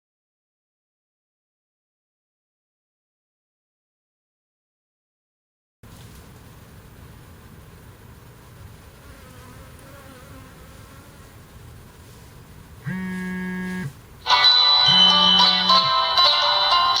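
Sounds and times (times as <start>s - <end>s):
honeybees buzzing: 6.2s - 16.2s
music: 14.2s - 17.0s.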